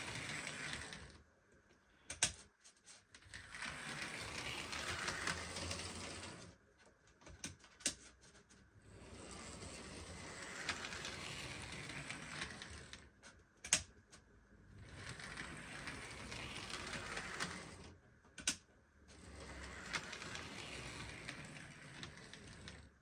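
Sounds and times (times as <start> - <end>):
model locomotive motor whirring: 3.4 - 6.4, 9.0 - 13.0, 14.9 - 17.9, 19.2 - 22.8.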